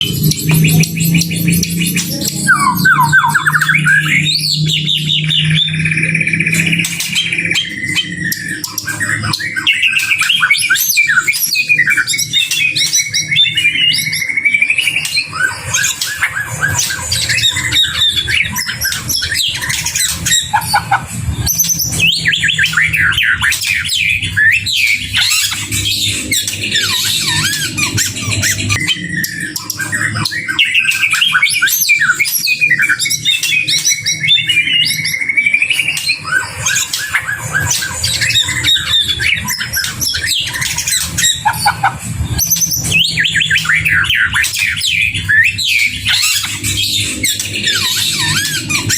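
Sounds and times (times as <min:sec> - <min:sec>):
bird singing: 0:00.0 - 0:48.9
steady low hum: 0:17.5 - 0:30.1, 0:38.4 - 0:48.9.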